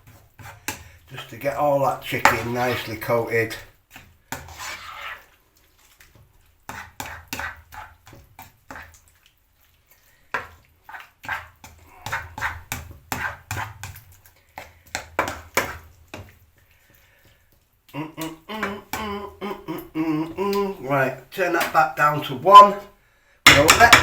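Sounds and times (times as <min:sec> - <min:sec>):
spoon scraping a pan: 0:00.0 - 0:17.4.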